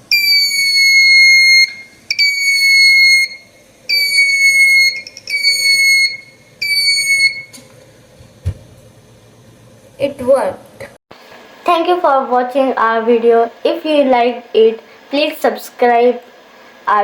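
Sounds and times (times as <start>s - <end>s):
piezo buzzer beeping: 0.1s - 7.6s.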